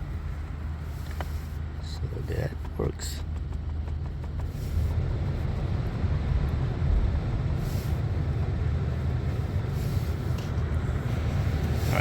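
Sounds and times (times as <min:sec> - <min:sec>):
car cabin low rumble: 0:00.0 - 0:12.0
climate-control fan blowing: 0:04.4 - 0:12.0.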